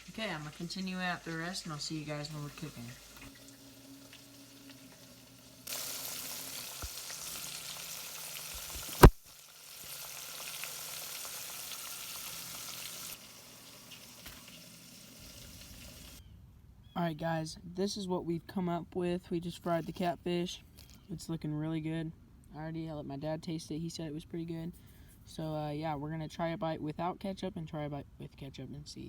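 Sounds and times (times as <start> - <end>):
fish frying in grease: 0.0 - 16.2
sharp loud click: 8.9 - 9.2.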